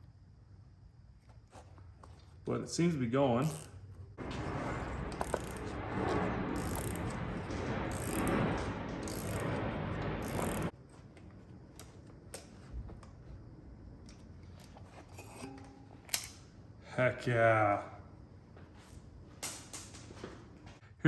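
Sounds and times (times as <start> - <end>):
socket ratchet clicking: 3.4 - 3.8, 6.6 - 7.0, 9.1 - 9.5, 10.2 - 10.6.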